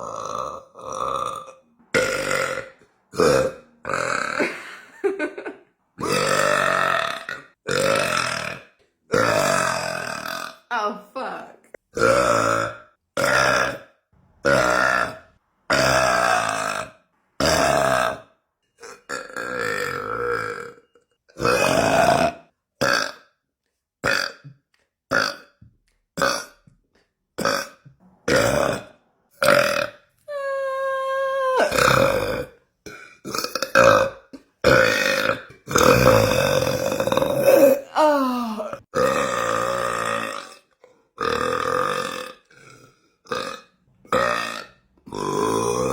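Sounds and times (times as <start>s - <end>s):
woman burping: 0.0s - 8.5s, 18.8s - 23.1s, 28.3s - 40.5s.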